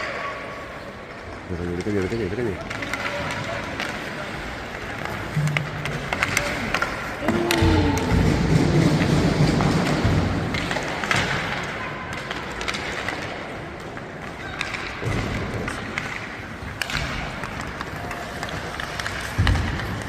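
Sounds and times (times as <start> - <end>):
hockey sticks and puck clicking: 0.0 - 20.0.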